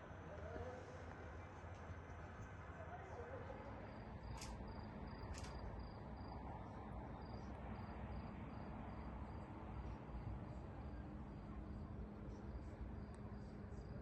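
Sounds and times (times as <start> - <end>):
cricket chirping: 3.7 - 14.0
sharp clicks: 4.3 - 4.6.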